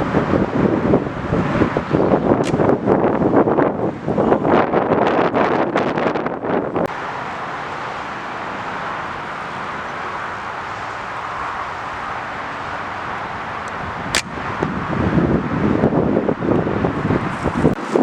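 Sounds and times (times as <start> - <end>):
wind buffeting microphone: 0.0 - 7.0, 7.8 - 18.0
sharp click: 2.4 - 2.6, 13.6 - 14.4.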